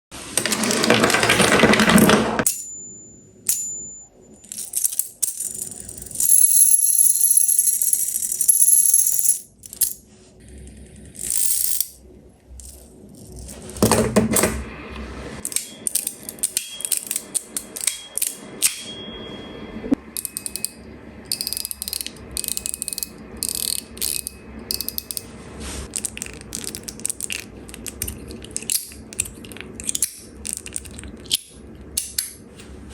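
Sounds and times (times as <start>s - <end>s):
metallic clicks and clinks: 2.4s - 10.0s, 15.4s - 18.9s, 20.1s - 25.2s
fidget spinner ringing whir: 15.4s - 25.2s.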